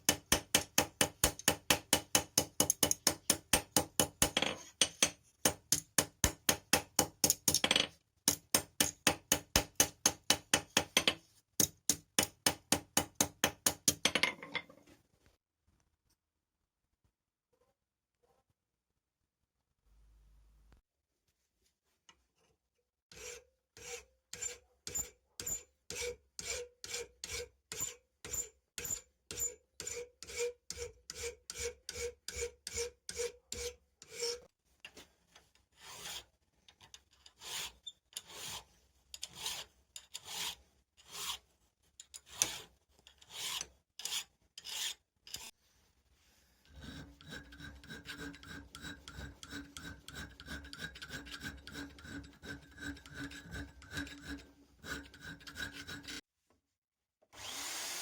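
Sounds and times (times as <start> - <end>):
hand file on steel: 0.0 - 4.4, 8.3 - 14.0, 23.1 - 34.5, 35.7 - 36.3, 37.2 - 41.5, 42.2 - 45.6, 46.6 - 56.2.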